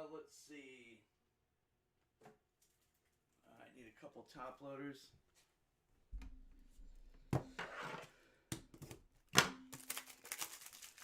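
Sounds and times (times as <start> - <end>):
cards rustling: 9.7 - 11.0.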